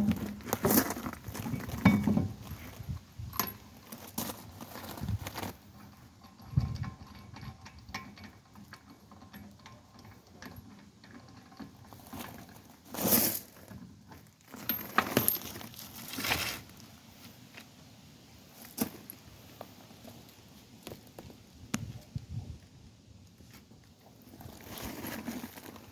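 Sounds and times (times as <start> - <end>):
metal tools clinking and rattling: 14.2 - 16.2.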